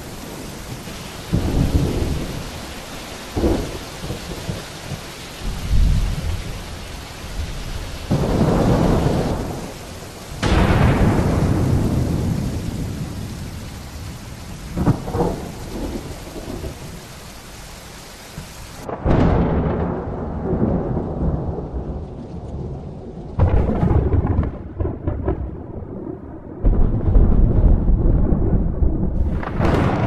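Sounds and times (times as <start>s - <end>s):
thunder rumbling: 0.0s - 17.5s, 18.3s - 30.0s
rain: 0.0s - 30.0s
sharp thunder crack: 1.3s - 2.5s, 3.4s - 6.5s, 8.1s - 13.8s, 14.4s - 16.8s, 18.8s - 21.9s, 23.4s - 30.0s.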